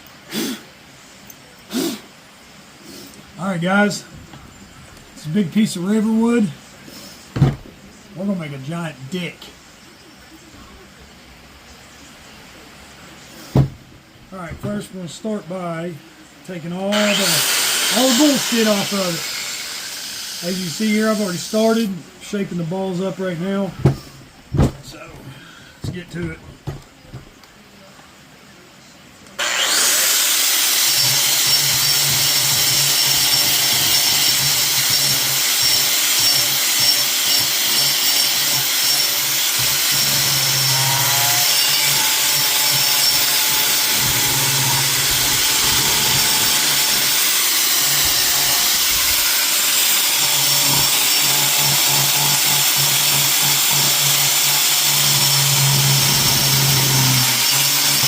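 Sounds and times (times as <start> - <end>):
power carving tool grinding wood: 16.9 - 23.4, 29.4 - 58.0.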